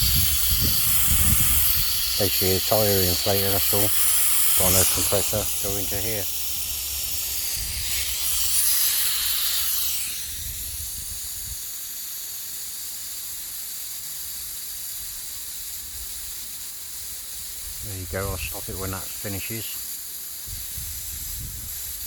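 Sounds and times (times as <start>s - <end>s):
compressed air hissing: 0.0s - 22.0s.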